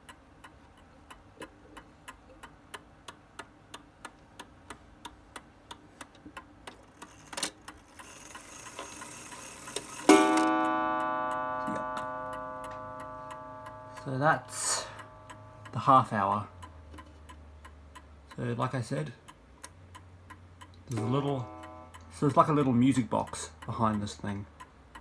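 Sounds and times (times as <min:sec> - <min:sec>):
clock ticking: 0:00.0 - 0:25.0
striking mechanism clicking and whirring: 0:06.1 - 0:15.8
clock gong ringing: 0:08.8 - 0:16.6, 0:20.9 - 0:22.6.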